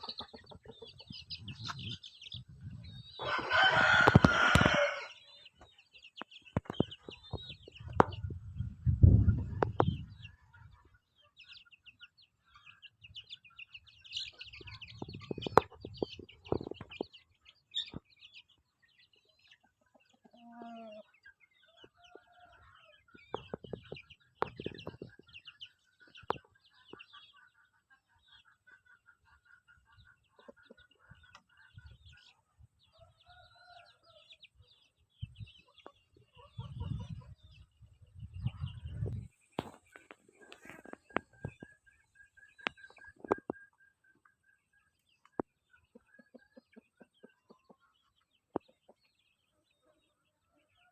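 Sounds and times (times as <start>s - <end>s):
chicks peeping and clucking: 0.0s - 50.9s
low drawn-out chicken calls: 3.2s - 5.7s, 20.2s - 25.2s, 32.8s - 34.6s.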